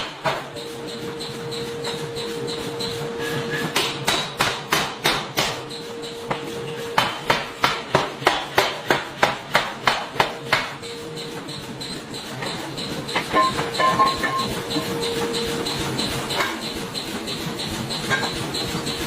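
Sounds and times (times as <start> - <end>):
forging hammer striking hot metal: 3.8 - 5.7, 6.3 - 11.3, 12.1 - 19.0.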